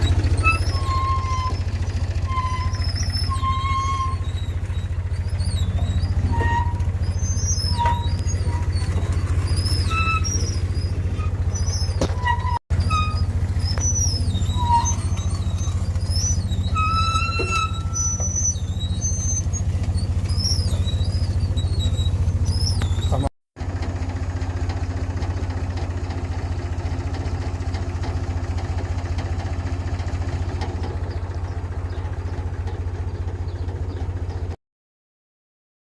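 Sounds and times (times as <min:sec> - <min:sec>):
tractor diesel engine rumbling: 0:00.0 - 0:34.6
high chirps and whistles: 0:02.3 - 0:12.0, 0:12.9 - 0:19.6, 0:20.3 - 0:23.3.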